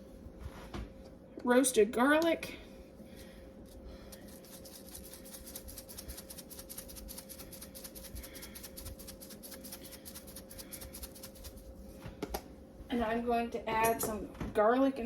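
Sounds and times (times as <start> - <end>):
faint steady hum: 0.0 - 15.0
seasoning shaken from spice jar: 4.2 - 11.7.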